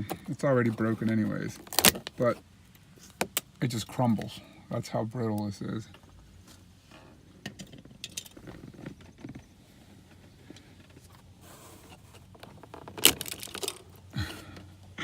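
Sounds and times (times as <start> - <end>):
plastic grill cracking: 1.6 - 2.2, 12.3 - 14.3.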